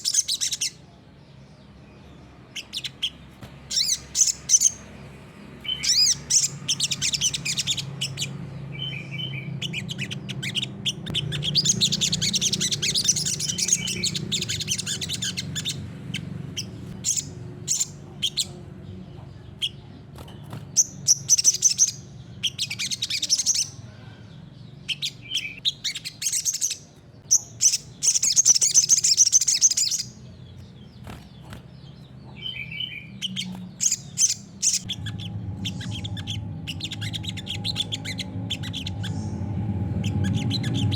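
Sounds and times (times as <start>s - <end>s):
bird twittering and trilling: 0.0s - 40.9s
steady low hum: 30.1s - 40.9s.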